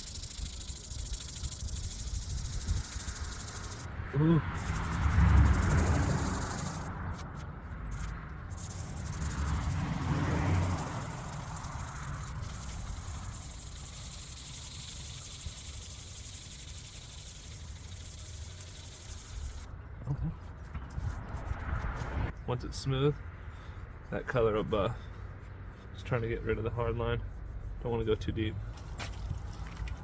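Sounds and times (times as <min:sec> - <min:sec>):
wet sandpaper rubbing hiss: 0:00.0 - 0:19.7.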